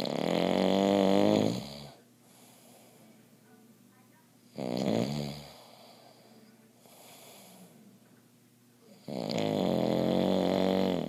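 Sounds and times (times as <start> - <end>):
man snoring: 0.0 - 2.0, 4.6 - 6.0, 8.9 - 11.0
faint breath: 2.0 - 3.6, 5.4 - 8.1.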